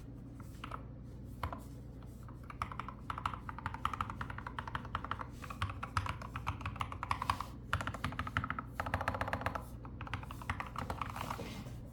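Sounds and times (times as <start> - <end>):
fast keyboard typing: 2.4 - 11.4.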